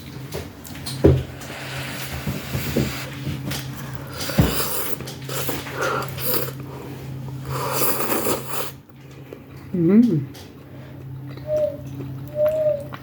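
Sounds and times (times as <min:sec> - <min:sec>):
noodles slurped and chewed: 0:01.4 - 0:09.6.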